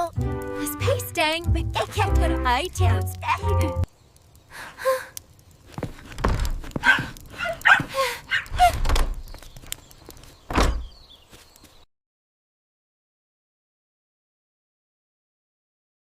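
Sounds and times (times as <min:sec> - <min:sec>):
cartoon dog barking: 0:06.8 - 0:08.5
thump: 0:10.5 - 0:10.9.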